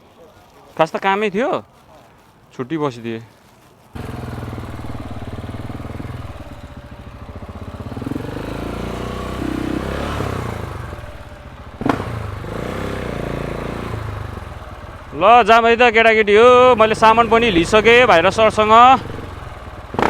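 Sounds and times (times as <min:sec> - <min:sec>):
motorcycle engine idling: 0:04.0 - 0:20.0.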